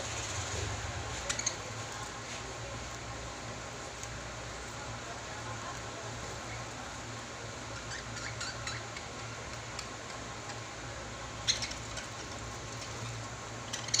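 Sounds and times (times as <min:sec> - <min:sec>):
steady low hum: 0:00.0 - 0:14.0
lovebirds chirping: 0:07.7 - 0:09.4, 0:11.4 - 0:14.0.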